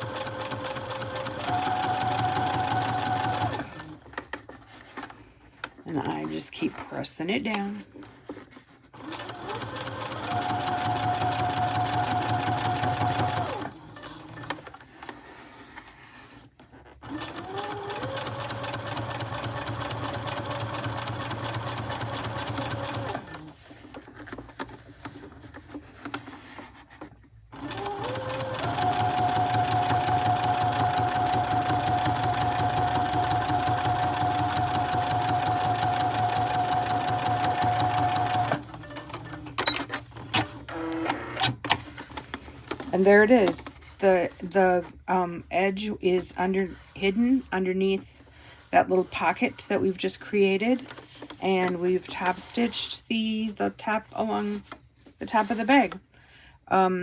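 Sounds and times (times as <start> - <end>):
sewing machine whining: 0.0 - 4.0, 9.0 - 14.7, 17.0 - 23.6, 27.5 - 42.2.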